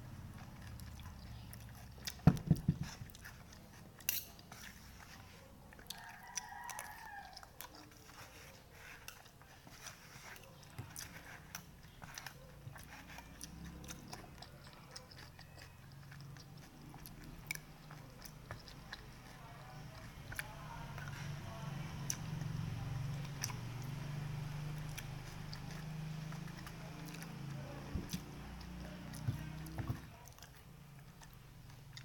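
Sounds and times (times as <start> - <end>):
person chewing noodles: 0.0 - 32.0.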